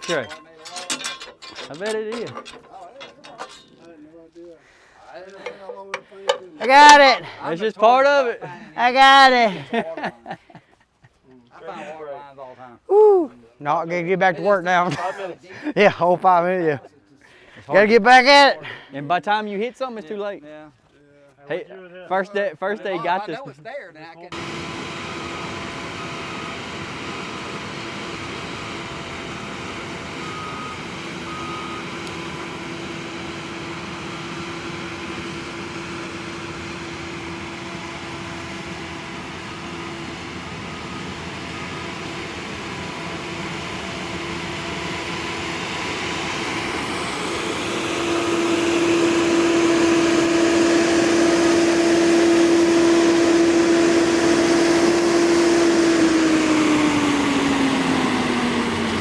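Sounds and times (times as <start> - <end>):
stump grinder engine hum: 24.3 - 59.0.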